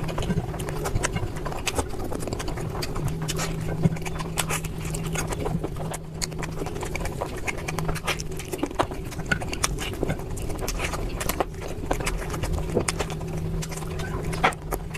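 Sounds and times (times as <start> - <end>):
low hum: 0.0 - 14.9
wet chewing: 0.0 - 14.9.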